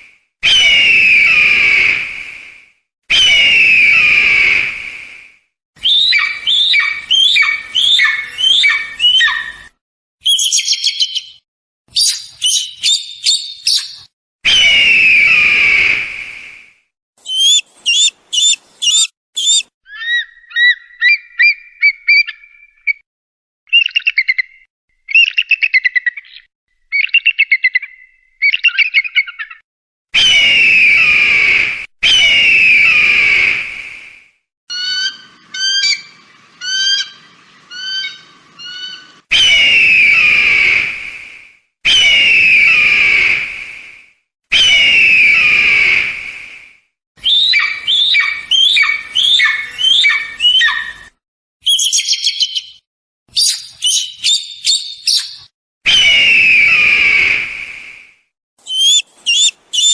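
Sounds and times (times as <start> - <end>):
eagle descending scream: 17.2 - 19.7, 58.7 - 59.9
eagle high chattering: 17.2 - 19.7, 58.6 - 59.9
eagle piping notes: 17.2 - 19.7, 58.6 - 59.9.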